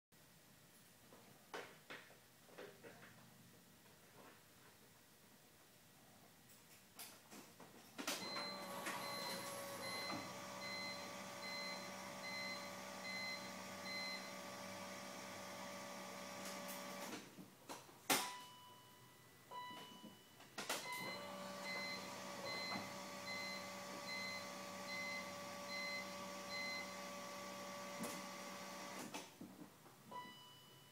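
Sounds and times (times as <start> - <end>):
pulsing warning beep: 8.2 - 14.3, 20.9 - 27.0
electric starter whir: 8.2 - 17.2, 21.0 - 29.1.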